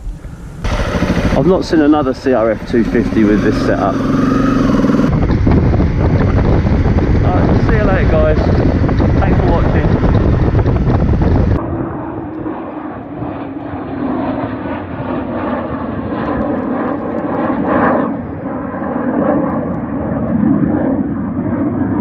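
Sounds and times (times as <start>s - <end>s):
motorcycle engine running: 0.0s - 11.6s.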